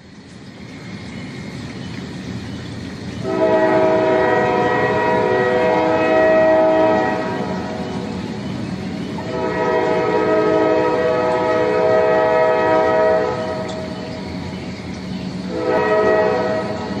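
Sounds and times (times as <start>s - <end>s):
train rumbling: 0.0s - 17.0s
train air horn chord: 3.2s - 8.1s, 9.2s - 13.9s, 15.5s - 17.0s.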